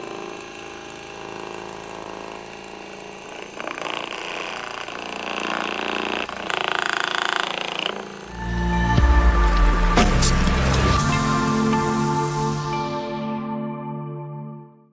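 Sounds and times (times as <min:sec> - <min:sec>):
small motor buzzing: 0:00.0 - 0:12.1
music: 0:08.3 - 0:14.9.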